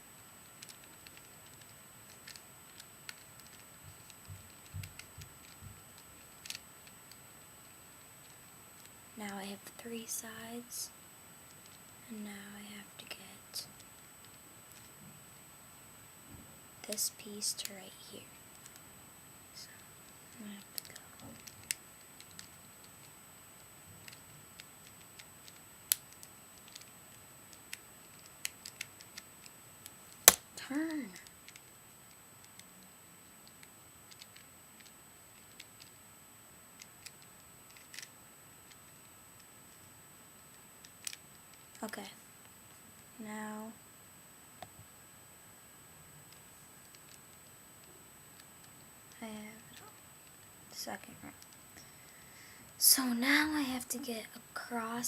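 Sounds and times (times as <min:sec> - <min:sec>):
puzzle cube clicking: 0:00.6 - 0:07.2, 0:20.6 - 0:23.1, 0:24.0 - 0:26.9, 0:27.5 - 0:32.8, 0:33.4 - 0:36.0, 0:36.8 - 0:38.1
sharp plastic snap: 0:30.2 - 0:30.4.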